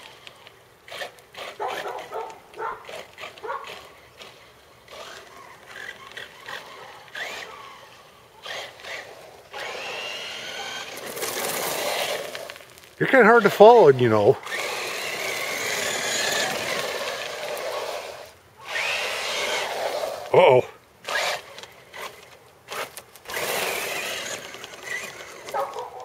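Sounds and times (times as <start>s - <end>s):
toy truck electric motor whining: 0.0s - 26.0s
dog yipping and whining: 1.6s - 3.8s, 25.5s - 26.0s.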